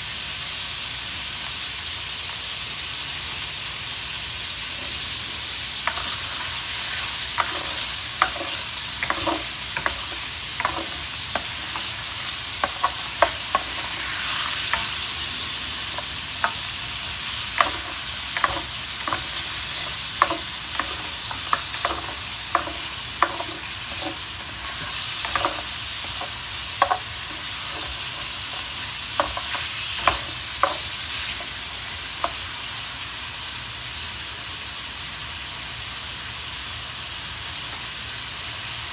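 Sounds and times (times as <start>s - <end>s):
food sizzling in hot pan: 0.0s - 38.9s
utensil scraping against pan: 5.9s - 32.5s.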